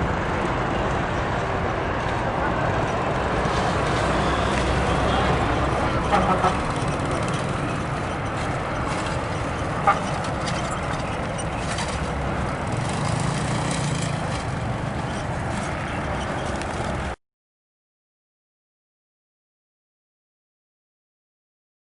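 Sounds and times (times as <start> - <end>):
bus engine idling: 0.0 - 17.2.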